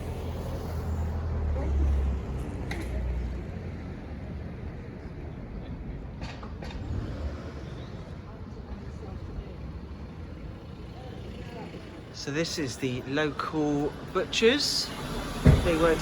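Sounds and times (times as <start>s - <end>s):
vehicle engine passing: 0.0s - 5.0s.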